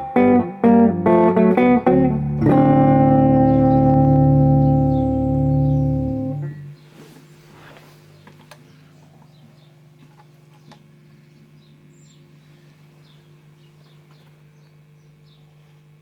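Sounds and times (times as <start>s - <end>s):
amplifier mains hum: 0.0s - 16.0s.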